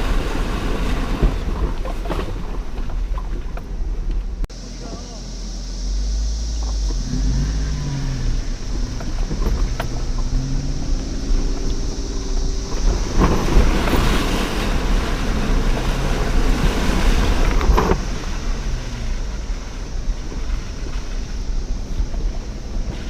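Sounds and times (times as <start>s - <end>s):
splashing water and mud: 0.0s - 3.6s, 8.7s - 22.0s
off-road vehicle engine revving: 0.0s - 23.0s
wind noise: 0.0s - 23.0s.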